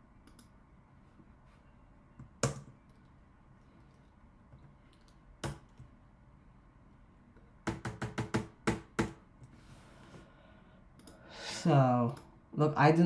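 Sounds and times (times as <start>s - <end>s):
typing on computer keyboard: 7.6s - 9.2s.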